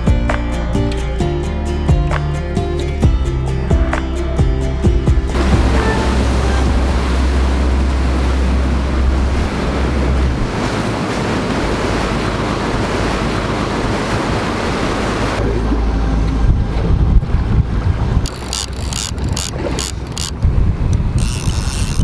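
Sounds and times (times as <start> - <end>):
deep low engine rumble: 0.0 - 22.0
wind buffeting microphone: 5.1 - 22.0
water rushing: 5.2 - 22.0.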